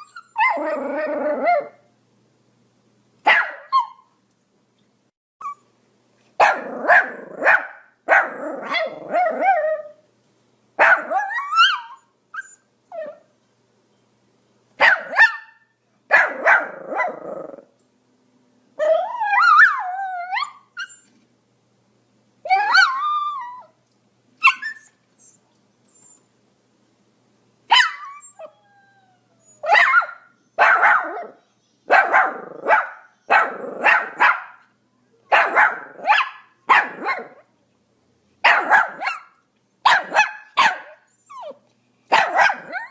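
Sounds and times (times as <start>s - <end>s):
dog whining yelps: 0.0s - 1.8s, 3.3s - 4.2s, 5.4s - 5.7s, 6.4s - 10.0s, 10.8s - 13.3s, 14.8s - 17.6s, 18.8s - 21.1s, 22.5s - 23.8s, 24.4s - 26.2s, 27.7s - 34.6s, 35.3s - 37.4s, 38.5s - 39.3s, 39.9s - 42.9s
small dog barking: 3.2s - 4.1s, 6.4s - 9.6s, 10.8s - 12.0s, 14.8s - 17.3s, 27.7s - 28.2s, 29.6s - 34.7s, 35.3s - 37.5s, 38.4s - 42.9s.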